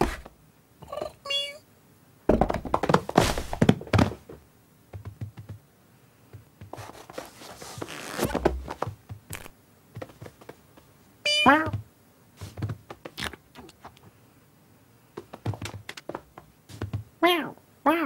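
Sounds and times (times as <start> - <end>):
cartoon cat meow: 0.9 - 1.6, 11.3 - 11.8, 17.2 - 18.0
rustling noise: 2.7 - 4.4, 6.3 - 14.2, 15.2 - 17.1
cartoon taps and scratches: 15.2 - 17.1.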